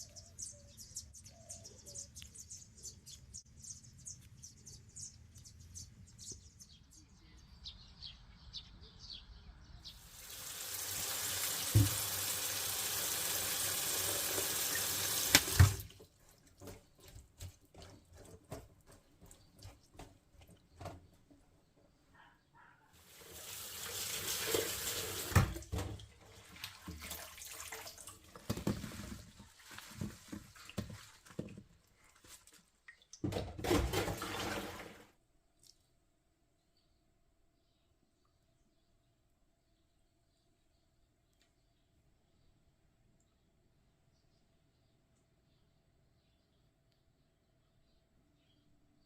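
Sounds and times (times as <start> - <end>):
tap water running into sink: 10.1 - 16.0, 23.1 - 29.0, 33.2 - 35.0.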